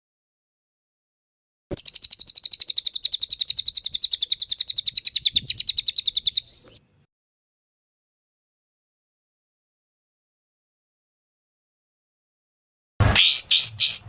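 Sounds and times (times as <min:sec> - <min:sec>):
songbird trilling: 0:01.7 - 0:07.0.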